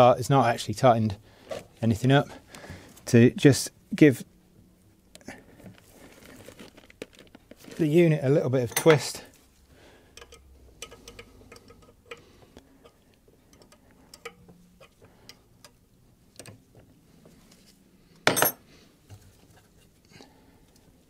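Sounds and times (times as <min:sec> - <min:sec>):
metallic clicks and taps: 0:10.2 - 0:16.6.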